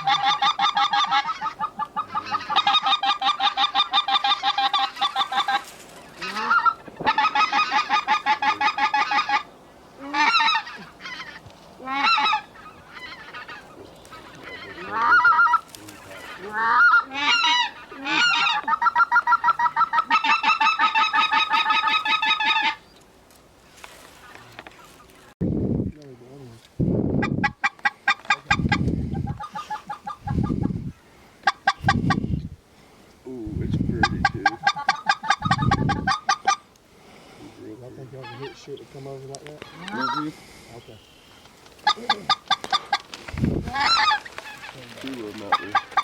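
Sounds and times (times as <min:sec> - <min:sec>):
goose calls: 0:00.0 - 0:22.8, 0:27.2 - 0:30.8, 0:34.0 - 0:36.7, 0:38.0 - 0:39.0, 0:39.6 - 0:41.2, 0:41.8 - 0:46.0.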